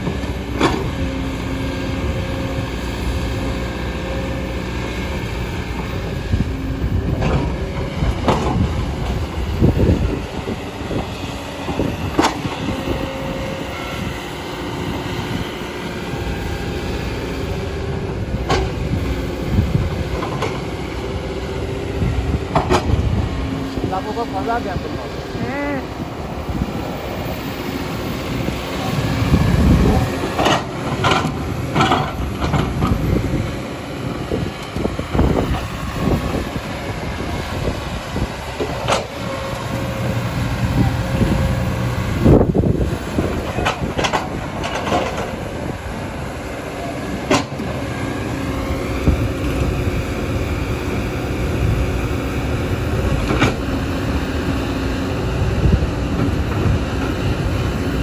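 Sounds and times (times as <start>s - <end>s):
excavator engine drone: 0.0s - 58.0s.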